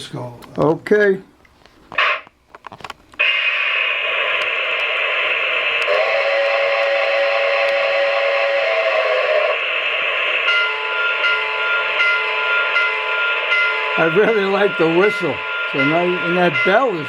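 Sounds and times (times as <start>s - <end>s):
model train whistle: 3.2s - 11.7s
steady hiss: 3.2s - 17.0s
model train bell ringing: 9.2s - 17.0s.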